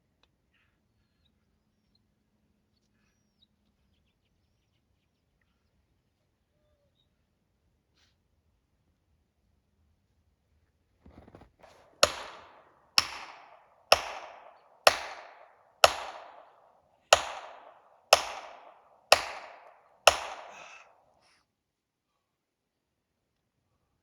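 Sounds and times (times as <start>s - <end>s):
hammer striking wedges: 11.1s - 21.0s.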